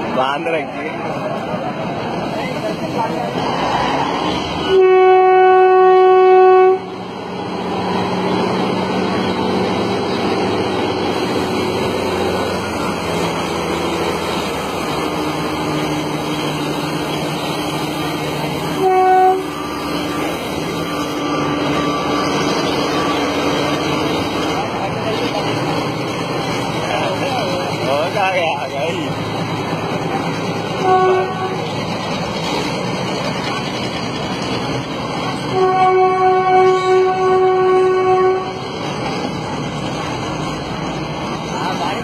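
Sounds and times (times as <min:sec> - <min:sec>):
train running rumble: 0:00.0 - 0:42.0
train horn blasts: 0:04.6 - 0:07.0, 0:18.6 - 0:23.2, 0:30.8 - 0:31.7, 0:35.5 - 0:38.7.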